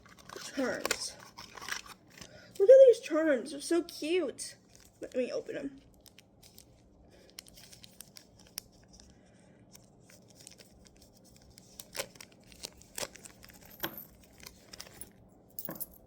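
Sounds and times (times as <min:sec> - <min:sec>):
packaging crinkling and tearing: 0:00.0 - 0:02.6, 0:04.6 - 0:05.2, 0:05.8 - 0:09.1, 0:09.8 - 0:15.0.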